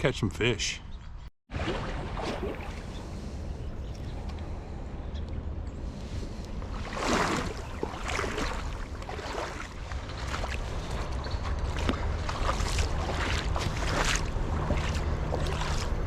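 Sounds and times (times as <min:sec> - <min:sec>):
steady low rumble: 0:02.5 - 0:16.0
footsteps walking: 0:09.0 - 0:16.0.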